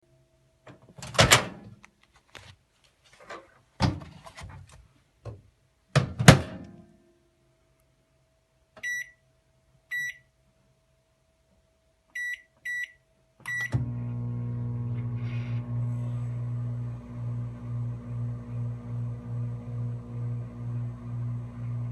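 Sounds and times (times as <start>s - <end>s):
microwave door clunks and knocks: 6.0s - 6.6s
short keypad beeps: 8.8s - 9.2s, 12.2s - 13.7s
microwave hum and fan: 13.4s - 21.9s.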